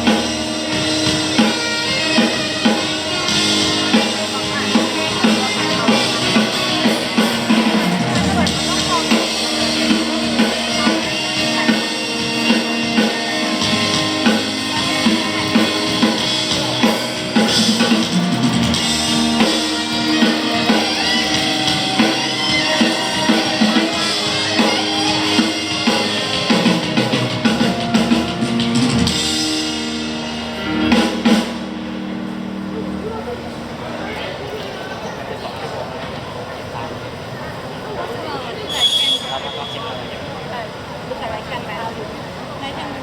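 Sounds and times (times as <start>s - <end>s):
drum kit beat: 0.0s - 32.3s
live rock band playing: 0.0s - 33.6s
electric guitar: 0.0s - 33.9s.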